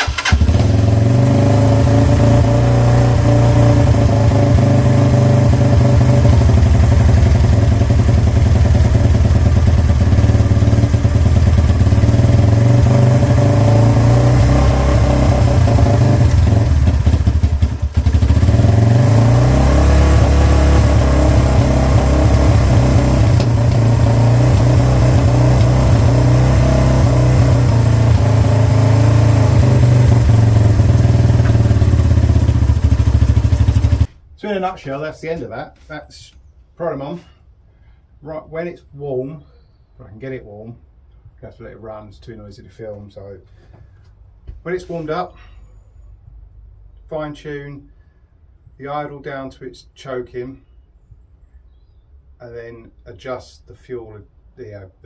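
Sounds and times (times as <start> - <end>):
motorcycle engine running: 0.0 - 34.1.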